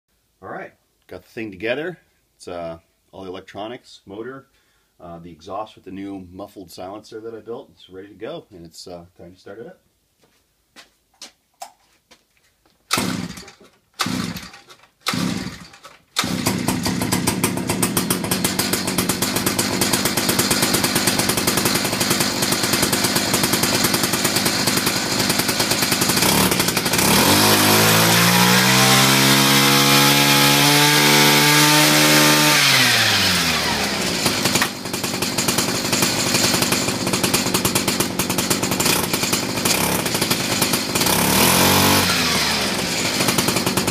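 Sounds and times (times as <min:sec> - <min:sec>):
two-stroke engine starting and running: 0:12.9 - 0:43.9.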